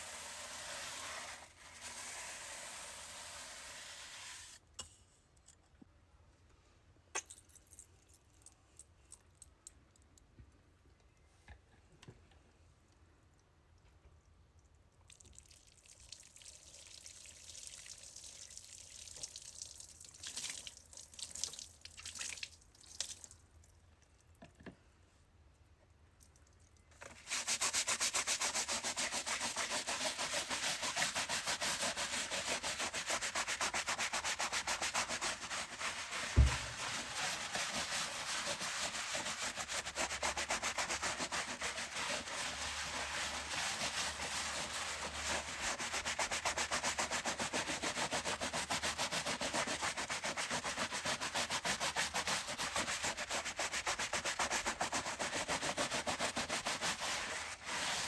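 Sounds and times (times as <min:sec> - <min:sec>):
brush scrubbing a chair: 0:00.0 - 0:04.6, 0:27.1 - 0:58.0
low thump: 0:36.4 - 0:36.8.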